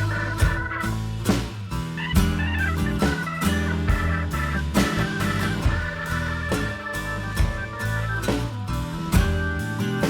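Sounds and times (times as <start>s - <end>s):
organ-like keyboard chord: 0.0s - 1.0s, 2.3s - 10.0s
drum hits: 0.0s - 9.7s
deep bass: 0.0s - 10.0s.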